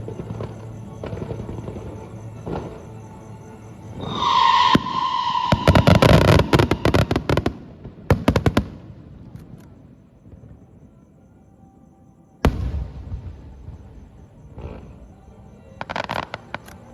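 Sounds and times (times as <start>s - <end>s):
firework bangs and crackles: 0.0s - 3.1s, 3.9s - 10.6s, 12.4s - 15.1s, 15.8s - 16.9s
firework whistle: 3.8s - 7.5s.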